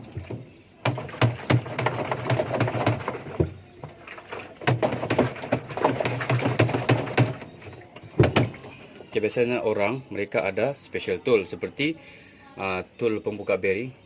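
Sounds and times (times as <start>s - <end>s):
washing machine drum rattling and knocking: 0.0s - 3.6s, 4.5s - 7.5s, 8.1s - 8.7s.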